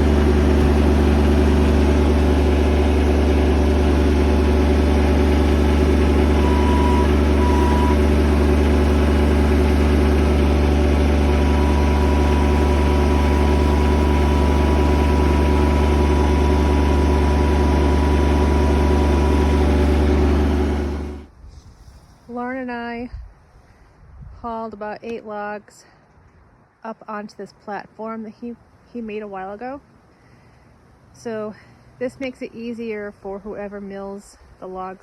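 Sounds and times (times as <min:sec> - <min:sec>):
machine engine running: 0:00.0 - 0:21.3.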